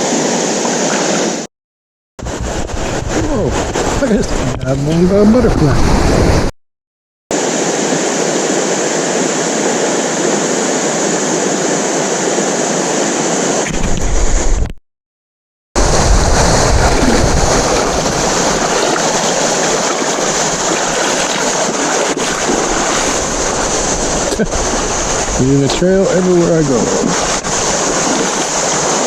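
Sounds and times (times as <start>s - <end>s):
river water rushing over rocks: 0.0s - 1.5s, 7.3s - 13.6s, 15.8s - 29.0s.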